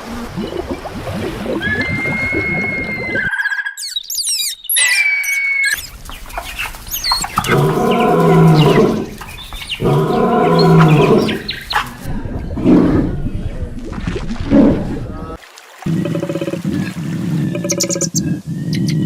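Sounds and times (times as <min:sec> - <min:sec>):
birds chirping: 0:00.0 - 0:13.7.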